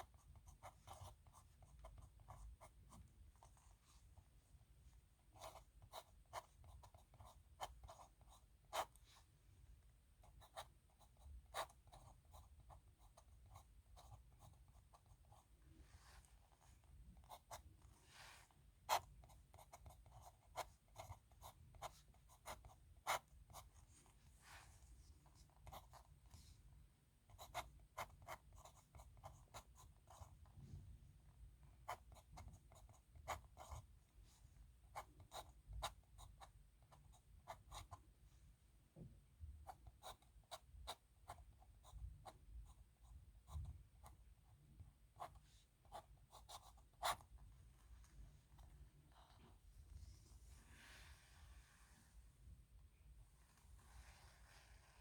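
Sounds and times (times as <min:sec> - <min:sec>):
pen scratching on paper: 0:00.0 - 0:03.8, 0:05.4 - 0:09.2, 0:10.2 - 0:15.5, 0:16.2 - 0:23.9, 0:25.3 - 0:26.5, 0:27.3 - 0:30.5, 0:31.8 - 0:33.9, 0:45.2 - 0:47.3.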